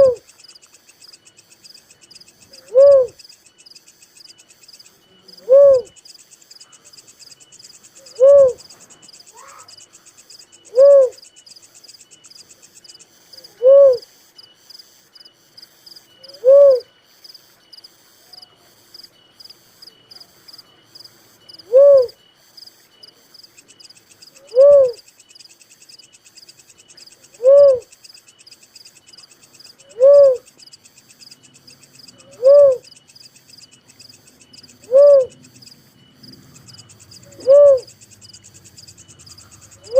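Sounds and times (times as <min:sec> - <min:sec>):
dove hooting: 0:00.0 - 0:00.3, 0:02.0 - 0:03.2, 0:05.1 - 0:06.0, 0:07.9 - 0:11.4, 0:13.4 - 0:14.1, 0:16.1 - 0:17.0, 0:21.5 - 0:22.2, 0:24.3 - 0:25.1, 0:27.1 - 0:28.0, 0:29.4 - 0:30.6, 0:31.3 - 0:39.9
insects trilling: 0:00.0 - 0:39.9.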